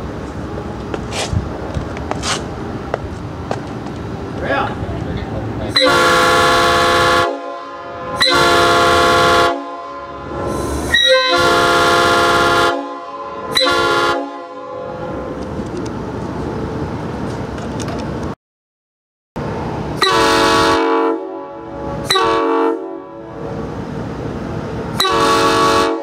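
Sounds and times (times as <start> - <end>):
locomotive air horn blasts: 5.7 - 15.3, 20.0 - 23.5, 24.9 - 26.0.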